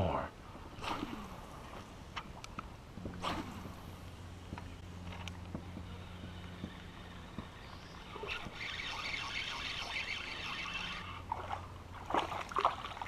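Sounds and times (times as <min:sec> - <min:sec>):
water trickling and splashing: 0:08.0 - 0:13.0.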